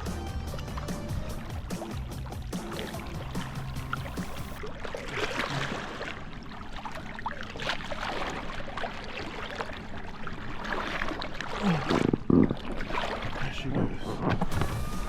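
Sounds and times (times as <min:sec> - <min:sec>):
water splashing and sloshing: 0:00.0 - 0:15.0.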